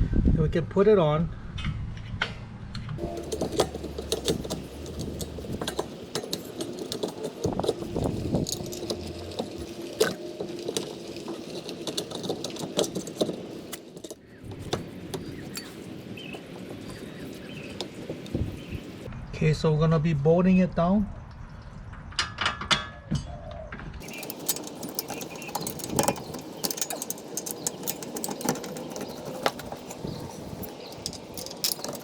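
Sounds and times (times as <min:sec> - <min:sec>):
low hum: 0:01.7 - 0:13.8
metallic clinks and knocks: 0:03.0 - 0:16.5, 0:24.0 - 0:32.0.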